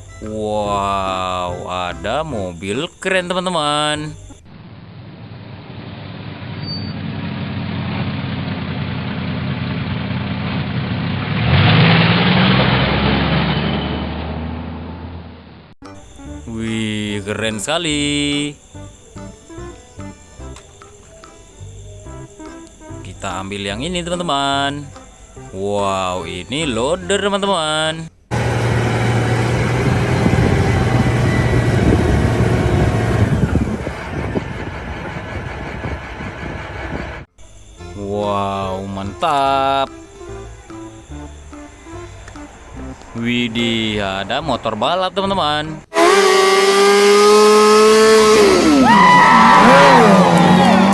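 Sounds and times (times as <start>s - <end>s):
car engine idling and revving: 4.2s - 15.8s, 28.3s - 37.3s, 45.8s - 50.9s.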